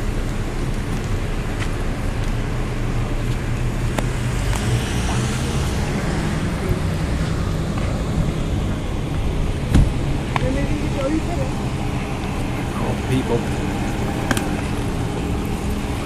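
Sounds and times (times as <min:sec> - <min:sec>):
cars passing: 0:00.0 - 0:16.0
short thump: 0:09.7 - 0:10.0.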